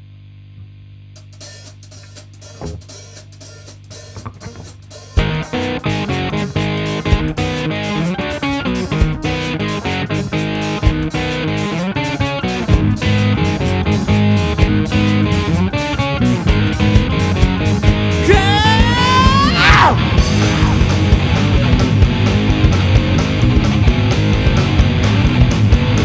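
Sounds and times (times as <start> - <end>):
steady drum beat: 1.2 - 26.0
guitar chords: 4.2 - 26.0
guitar sliding up in pitch: 5.2 - 25.4.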